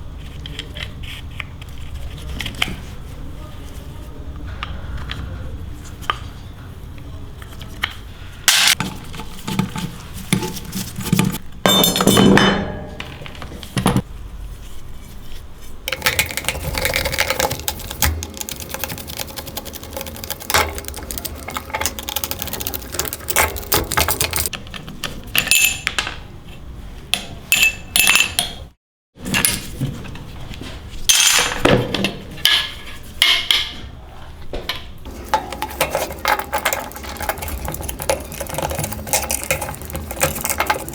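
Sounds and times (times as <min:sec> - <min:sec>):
metal tools clinking and knocking: 0:11.7 - 0:14.0, 0:35.1 - 0:40.9
metal scraping: 0:15.9 - 0:24.5, 0:35.1 - 0:40.9.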